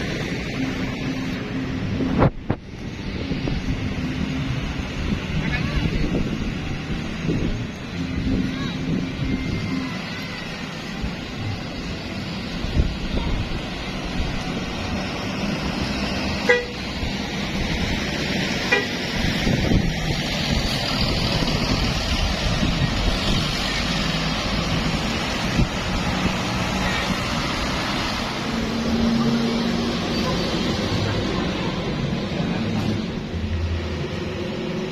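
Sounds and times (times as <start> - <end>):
buses passing on road: 0.0 - 34.9
bus horn toots: 16.4 - 17.0, 18.6 - 19.0.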